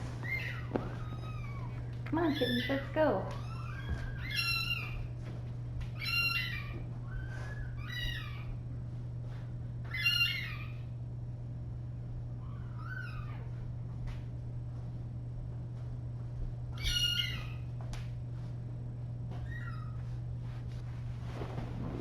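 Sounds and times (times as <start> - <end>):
steady low hum: 0.0 - 22.0
kittens meowing: 0.2 - 5.2, 5.9 - 8.6, 9.9 - 11.0, 12.4 - 13.6, 16.7 - 17.8, 19.4 - 20.0.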